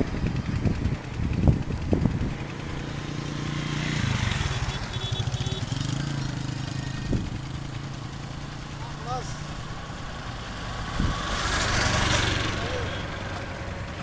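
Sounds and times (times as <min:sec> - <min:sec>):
vehicle engine idling: 0:04.0 - 0:10.7.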